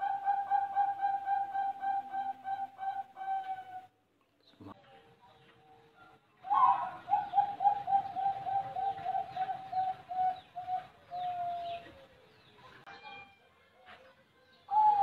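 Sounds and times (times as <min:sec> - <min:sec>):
dove cooing: 0:00.0 - 0:03.9, 0:06.5 - 0:12.3, 0:14.7 - 0:15.0.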